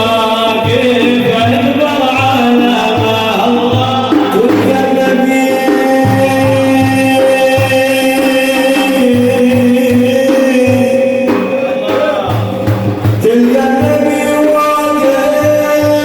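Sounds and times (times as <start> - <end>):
hand drum beat: 0.0 - 16.0.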